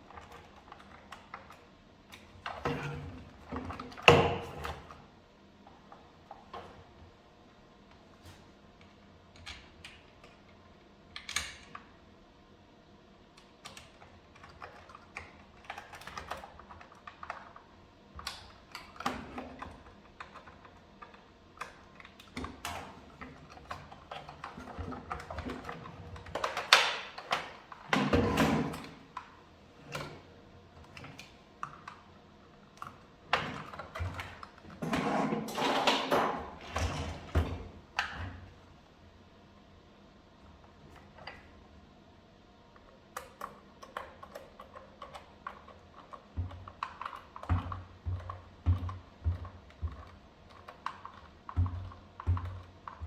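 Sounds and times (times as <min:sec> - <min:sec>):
plastic clicks and knocks: 0:43.2 - 0:53.0.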